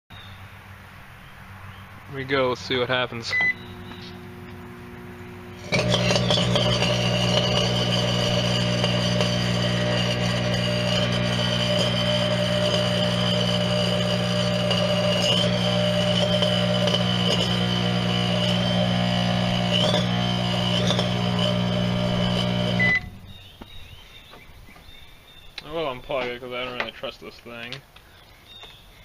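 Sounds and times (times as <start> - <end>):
high whine: 2.0 - 23.4
microwave oven humming and buzzing: 3.3 - 23.4.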